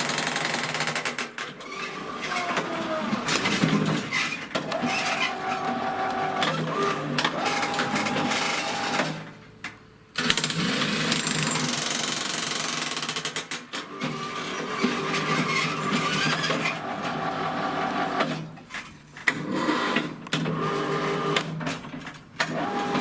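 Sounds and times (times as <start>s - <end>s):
jackhammer rattling: 0.0s - 1.5s, 10.2s - 13.6s.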